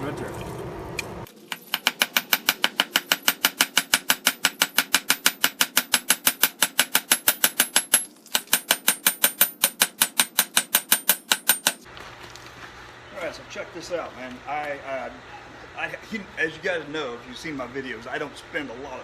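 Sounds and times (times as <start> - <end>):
hammer striking metal on anvil: 1.5 - 11.8.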